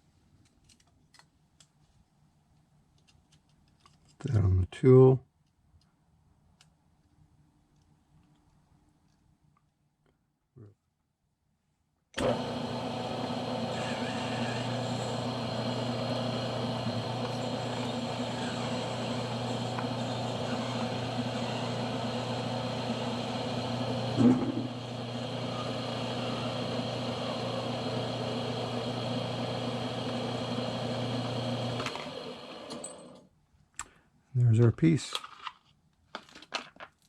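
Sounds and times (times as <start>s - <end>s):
lathe running with low hum: 12.2s - 33.2s.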